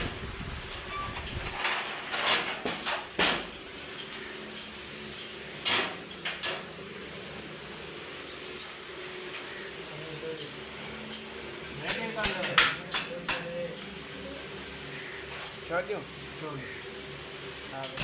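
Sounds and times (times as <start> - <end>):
metal tools clanking: 10.0 - 14.0, 17.8 - 18.0.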